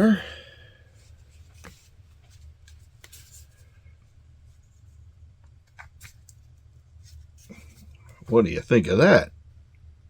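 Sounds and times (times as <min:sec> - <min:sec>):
low steady hum: 0:00.0 - 0:10.0
soft clicks and rustles: 0:01.0 - 0:08.3.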